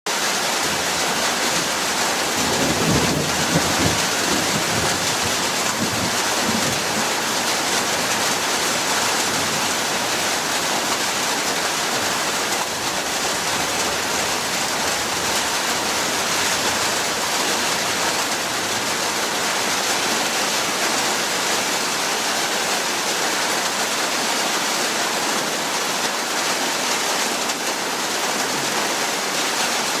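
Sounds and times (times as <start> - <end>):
heavy rain falling: 0.1 - 30.0
thunder rumbling: 0.7 - 10.7.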